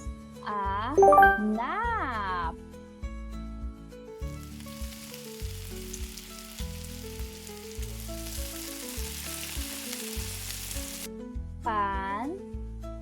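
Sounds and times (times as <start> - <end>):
simple children's music: 0.9 - 2.3
steady hiss: 4.2 - 11.1.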